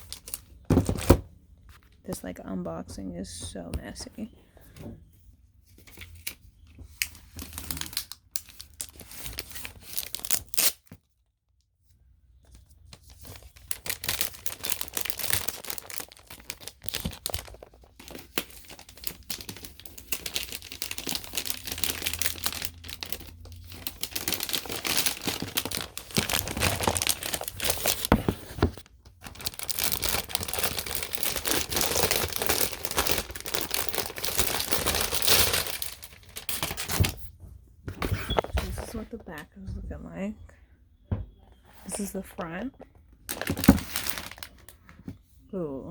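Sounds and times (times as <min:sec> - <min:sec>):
packaging wrap rustling and tearing: 0:00.0 - 0:01.2, 0:05.8 - 0:11.0, 0:12.9 - 0:37.3, 0:43.2 - 0:44.8.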